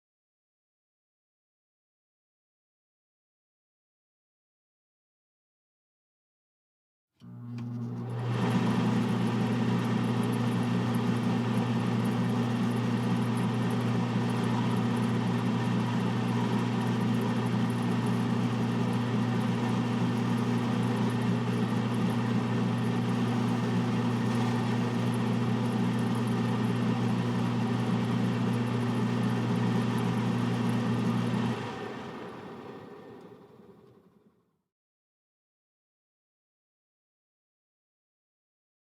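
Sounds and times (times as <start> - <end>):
exhaust fan humming: 7.2 - 33.8.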